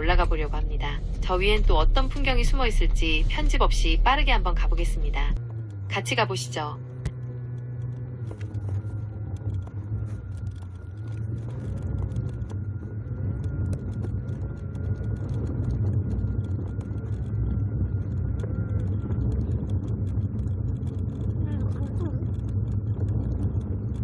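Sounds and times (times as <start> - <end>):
car engine and road rumble: 0.0 - 24.0
small clicks and rattles: 6.8 - 24.0.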